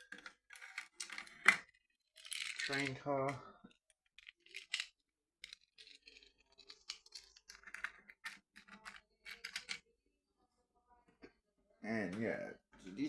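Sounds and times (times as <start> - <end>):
plastic toy bricks clicking and rattling: 0.0 - 9.9.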